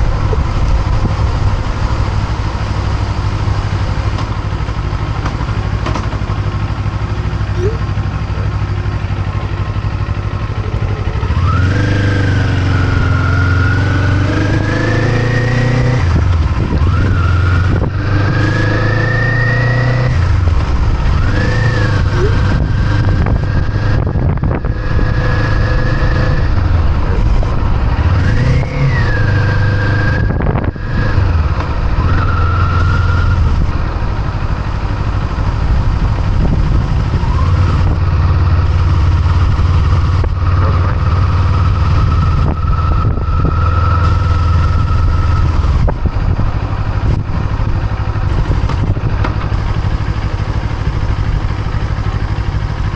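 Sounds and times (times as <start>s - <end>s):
motorcycle engine accelerating: 0.0s - 52.9s.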